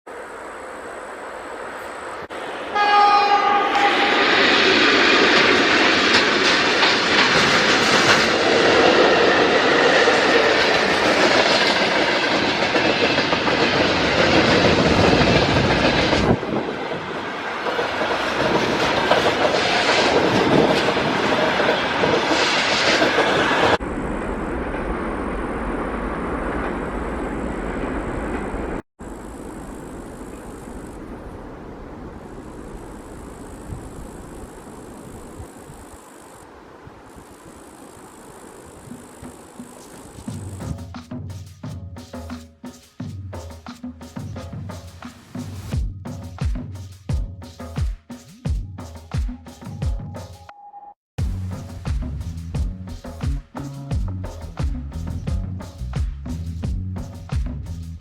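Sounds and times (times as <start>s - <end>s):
low train rumble: 0.1s - 41.0s, 51.2s - 58.0s
train horn blast: 2.6s - 4.6s
train wheels clattering: 4.1s - 23.8s.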